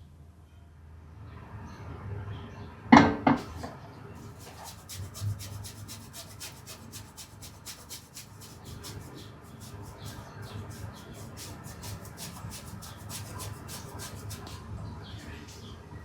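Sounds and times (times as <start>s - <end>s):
kitchen utensils scraping and tapping: 4.2s - 14.6s.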